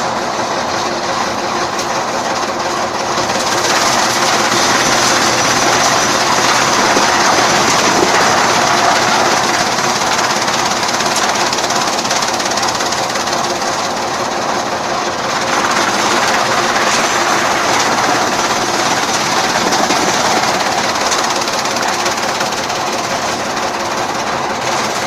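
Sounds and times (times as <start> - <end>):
chaff cutter mechanical rattle: 0.0 - 25.0.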